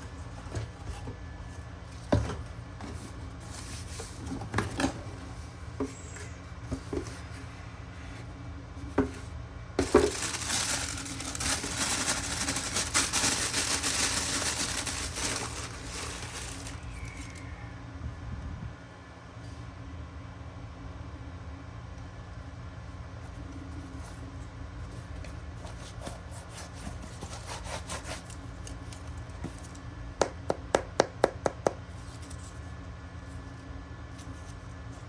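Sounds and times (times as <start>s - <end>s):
paper packaging rustling: 9.8s - 17.4s.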